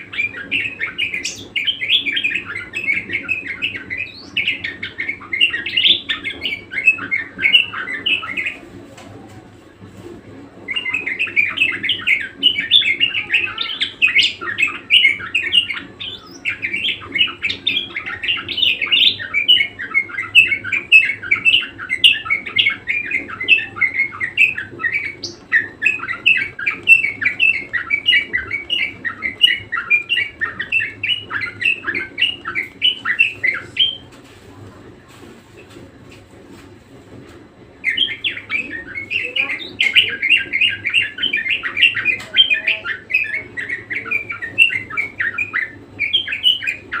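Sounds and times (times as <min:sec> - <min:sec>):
budgerigar warbling: 0:10.7 - 0:34.0.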